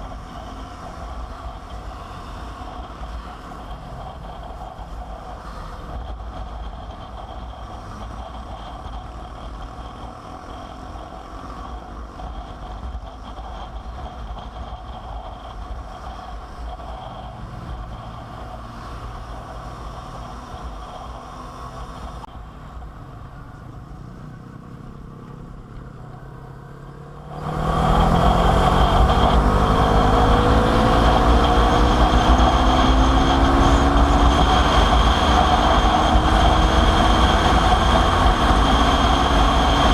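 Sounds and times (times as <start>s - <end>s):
wind noise: 0.0s - 23.8s, 27.2s - 39.9s
motorcycle engine accelerating: 0.0s - 39.9s.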